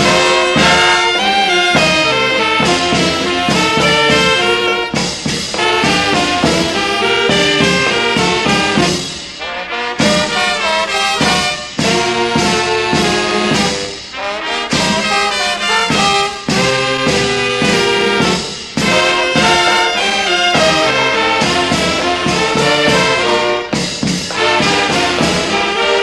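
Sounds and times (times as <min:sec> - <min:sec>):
brass band playing: 0:00.0 - 0:26.0.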